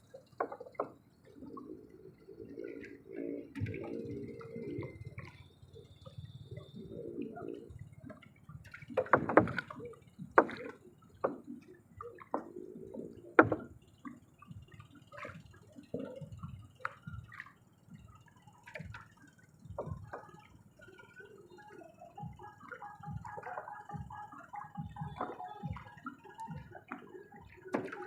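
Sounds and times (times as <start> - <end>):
water dripping: 0.0 - 28.0
sharp knocks and clicks: 0.3 - 1.1, 8.7 - 13.9.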